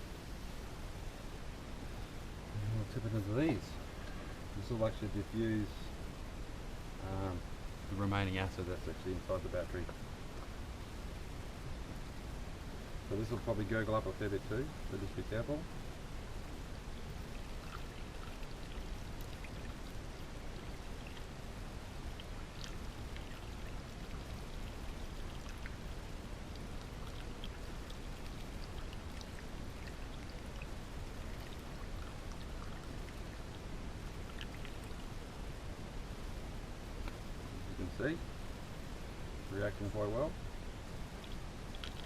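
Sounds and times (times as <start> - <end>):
liquid fizzing and gurgling: 16.4 - 35.5, 41.0 - 42.0.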